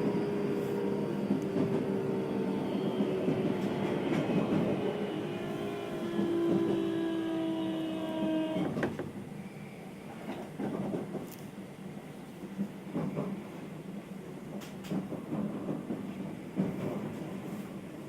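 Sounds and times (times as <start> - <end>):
train inverter whine: 0.0 - 10.3.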